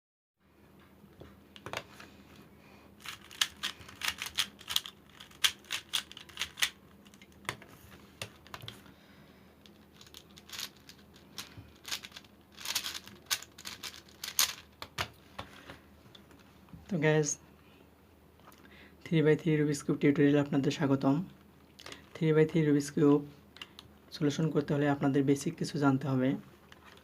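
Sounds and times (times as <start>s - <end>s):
plastic puzzle cube clicking: 3.0s - 7.6s.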